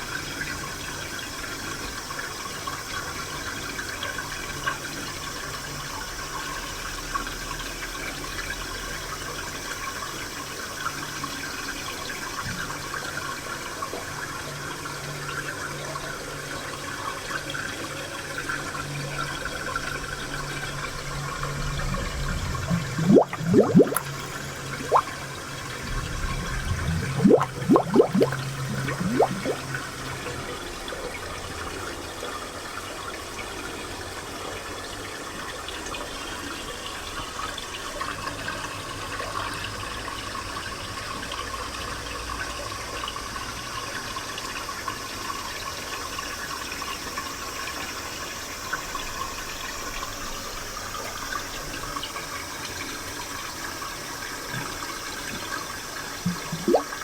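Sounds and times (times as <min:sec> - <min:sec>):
spring water gurgling: 0:19.4 - 0:31.7, 0:48.9 - 0:57.0.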